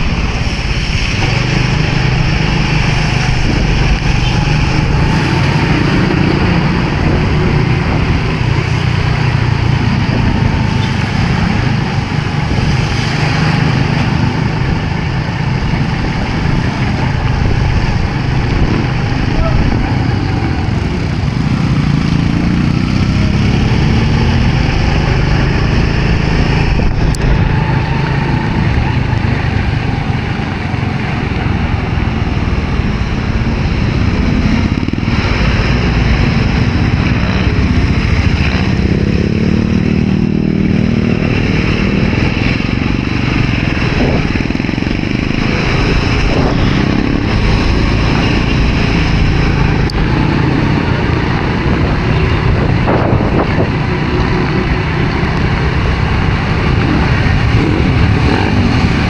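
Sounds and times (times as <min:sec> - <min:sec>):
wind and road noise: 0:00.0 - 0:59.0
motorcycle engine running: 0:13.6 - 0:59.0.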